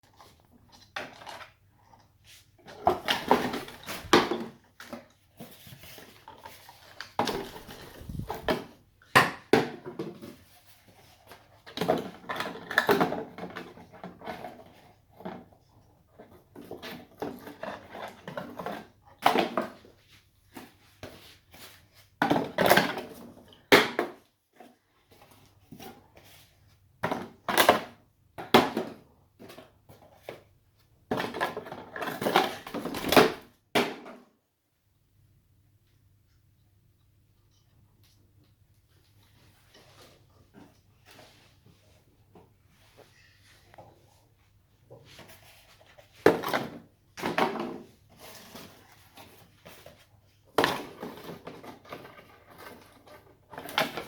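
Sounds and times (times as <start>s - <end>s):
parrot playing with ball: 5.4s - 8.7s.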